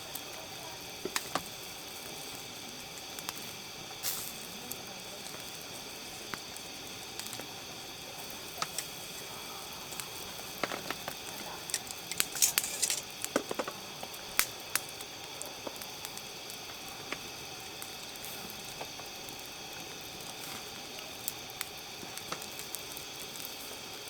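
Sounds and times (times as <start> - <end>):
campfire crackling and popping: 0.0 - 24.0
fire soft hiss: 0.0 - 24.0.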